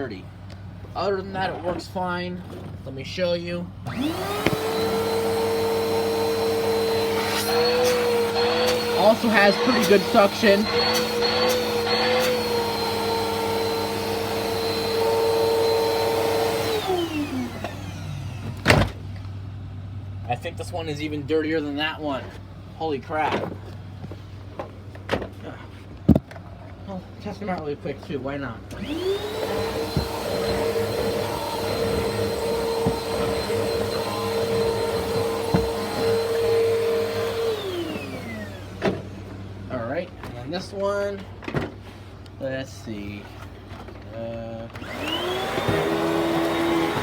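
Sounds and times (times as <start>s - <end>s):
upright vacuum motor whine: 3.9s - 19.0s, 28.7s - 39.5s, 44.8s - 47.0s.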